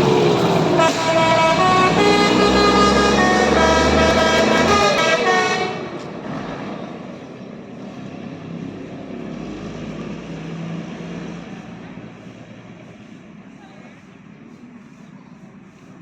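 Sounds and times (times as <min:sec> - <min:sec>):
bus air horn melody: 0:00.0 - 0:06.0
bus engine rumbling: 0:00.0 - 0:16.0.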